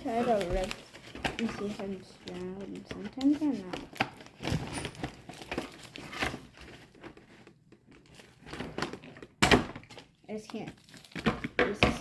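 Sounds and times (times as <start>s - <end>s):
packaging crinkling: 0.0s - 11.5s
packaging ripping: 7.9s - 11.5s.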